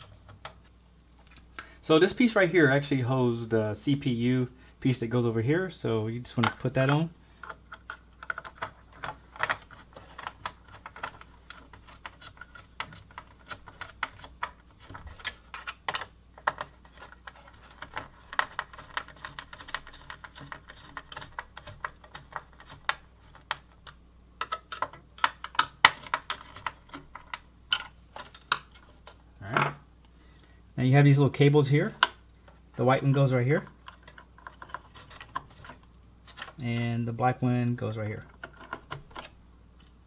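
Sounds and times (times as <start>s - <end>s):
computer parts clicking and knocking: 7.8s - 23.6s.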